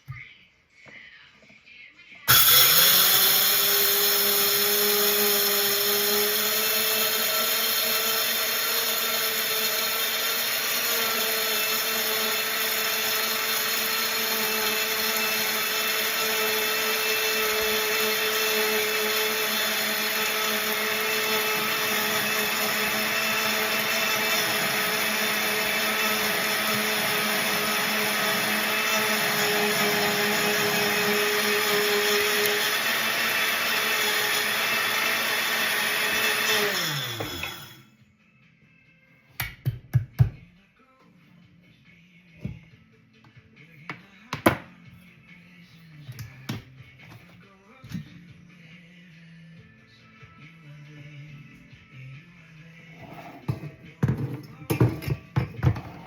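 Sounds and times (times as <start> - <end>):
electric grain mill whining: 2.3 - 37.8, 52.9 - 56.0.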